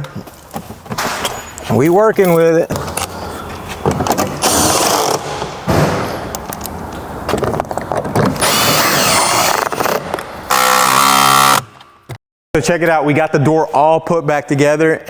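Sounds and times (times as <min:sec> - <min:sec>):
cordless power tool whining: 0:08.4 - 0:11.8.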